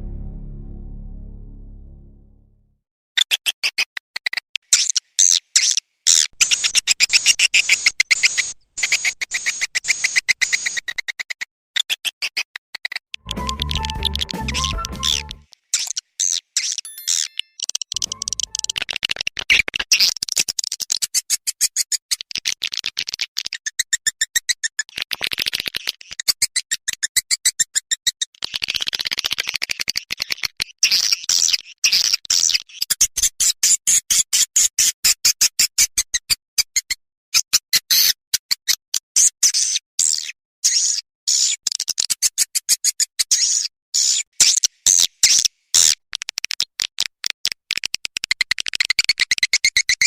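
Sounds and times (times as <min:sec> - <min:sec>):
swiftlet clicks and buzzy chirps: 0:06.4 - 0:10.8, 0:13.2 - 0:16.0, 0:17.0 - 0:19.1.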